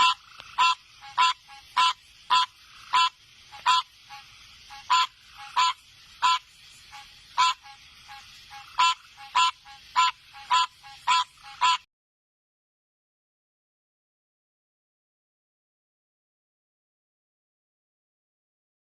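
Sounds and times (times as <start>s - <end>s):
frog calling: 0.0s - 11.9s.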